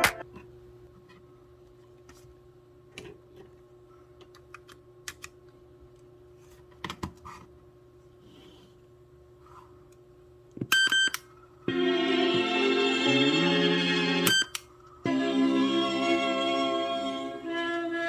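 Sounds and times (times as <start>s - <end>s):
music playing: 11.7s - 14.4s, 15.0s - 18.0s.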